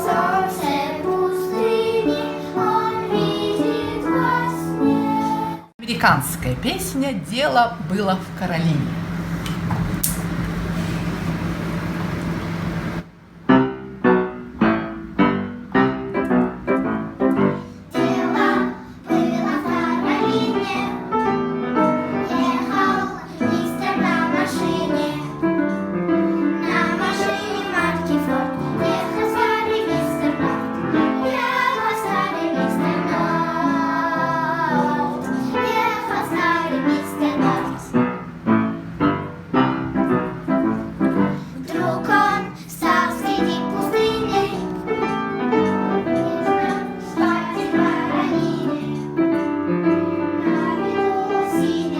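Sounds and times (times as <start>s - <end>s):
children singing: 0.0s - 5.7s, 17.9s - 38.0s, 41.6s - 51.9s
rhythmic keyboard music: 39.6s - 51.9s.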